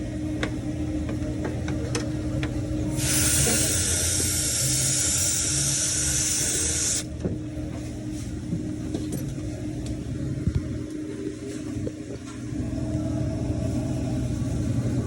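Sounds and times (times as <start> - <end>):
refrigeration equipment humming: 0.0 - 15.0
pressurised hiss: 3.0 - 7.1.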